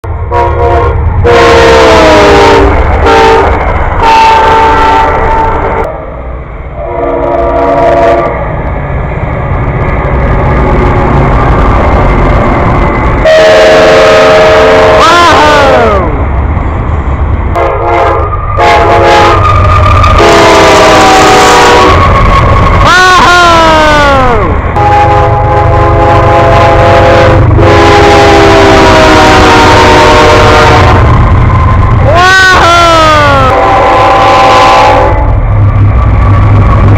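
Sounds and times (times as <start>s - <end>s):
train rumbling: 0.0s - 36.9s
train horn blasts: 0.3s - 6.1s, 6.8s - 8.4s, 13.2s - 16.1s, 17.5s - 22.2s, 24.8s - 31.7s, 33.1s - 35.4s.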